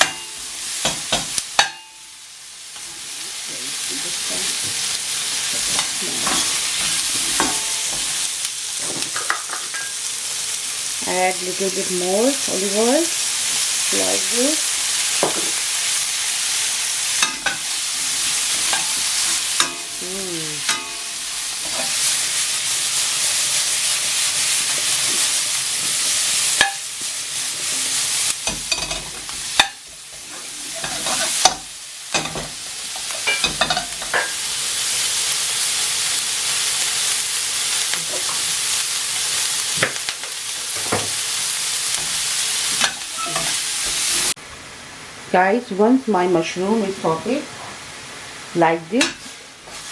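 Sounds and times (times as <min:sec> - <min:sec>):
vegetables sizzling in frying pan: 0:00.0 - 0:49.9
spatula scraping and knocking pan: 0:05.5 - 0:10.0, 0:28.4 - 0:34.4.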